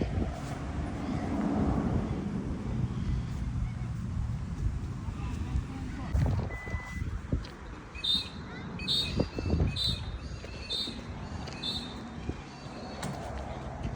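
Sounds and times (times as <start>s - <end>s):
wind rumbling on microphone: 0.0s - 13.9s
bird calling: 8.0s - 13.1s.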